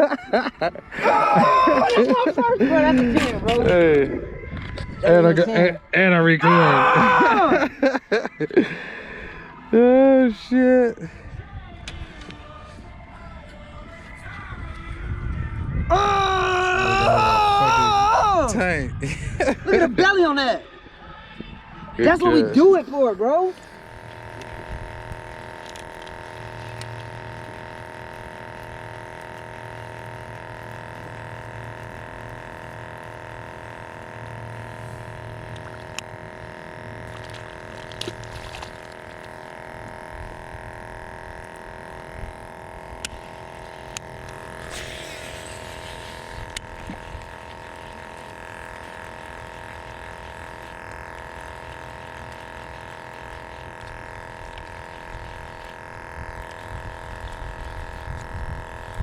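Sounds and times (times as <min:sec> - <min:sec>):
electric motor humming: 0:00.0 - 0:59.0
short hiss: 0:44.6 - 0:47.0.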